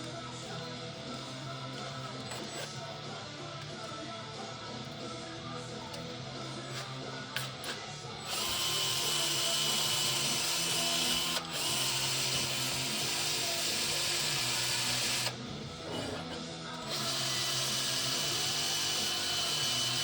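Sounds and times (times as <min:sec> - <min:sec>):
rotary tool whining and grinding: 0:01.7 - 0:03.1, 0:05.9 - 0:20.0.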